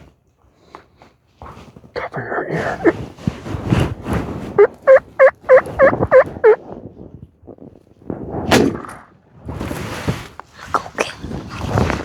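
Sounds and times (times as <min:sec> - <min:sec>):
turkey yelping: 0:02.6 - 0:03.0, 0:04.6 - 0:06.6.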